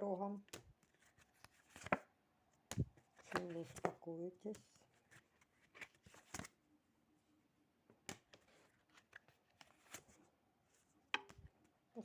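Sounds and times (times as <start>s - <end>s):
cards clicking and rustling: 0.4s - 6.6s, 8.0s - 10.2s.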